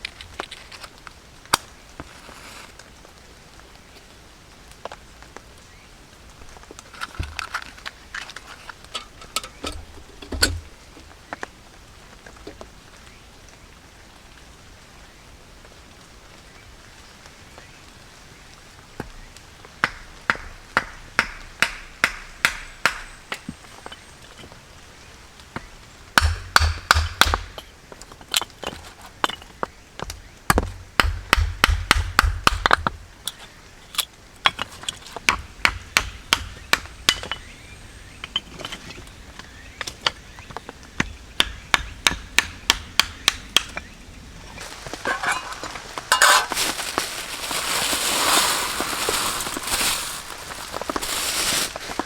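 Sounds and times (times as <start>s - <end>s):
steady hiss: 0.0s - 18.8s, 44.2s - 52.0s.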